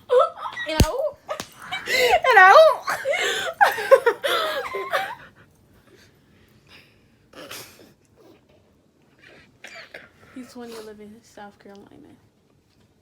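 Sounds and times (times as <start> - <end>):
people laughing loudly: 1.6 - 5.2.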